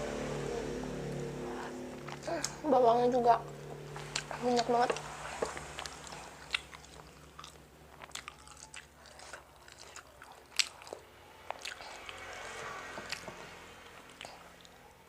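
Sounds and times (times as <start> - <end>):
person chewing food: 3.5 - 14.9.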